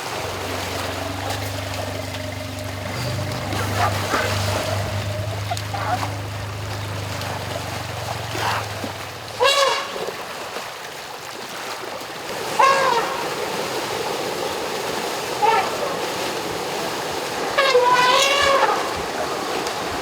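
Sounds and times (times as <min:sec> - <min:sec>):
low steady hum: 0:00.0 - 0:09.9
river water splashing: 0:00.0 - 0:20.0
elephant squeals: 0:00.2 - 0:10.0, 0:17.6 - 0:19.0.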